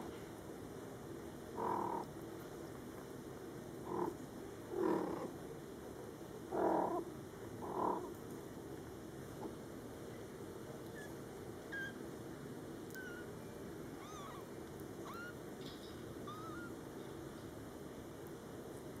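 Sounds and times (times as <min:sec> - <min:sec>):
kittens mewing: 0:12.9 - 0:13.3, 0:14.0 - 0:15.4, 0:16.2 - 0:16.8.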